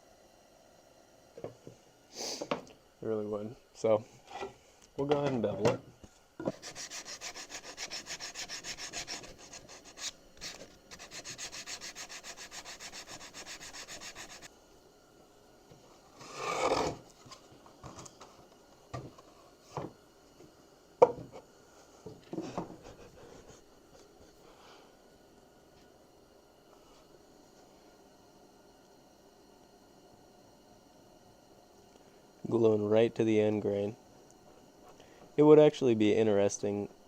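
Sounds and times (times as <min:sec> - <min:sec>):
wood scrape: 0:06.4 - 0:14.5, 0:16.2 - 0:17.0
rubbing wooden edge: 0:06.5 - 0:14.5.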